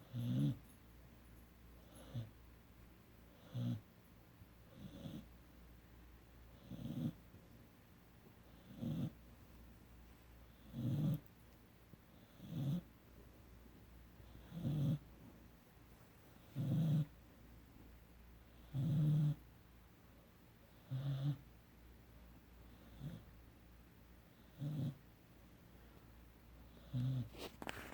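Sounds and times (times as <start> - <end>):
puppy snoring: 0.0 - 0.7, 1.8 - 2.4, 3.3 - 3.9, 4.6 - 5.3, 6.5 - 7.3, 8.4 - 9.2, 10.4 - 11.3, 12.1 - 13.0, 14.2 - 15.1, 16.3 - 17.2, 18.4 - 19.5, 20.7 - 21.5, 22.6 - 23.3, 24.3 - 25.1, 26.6 - 27.9.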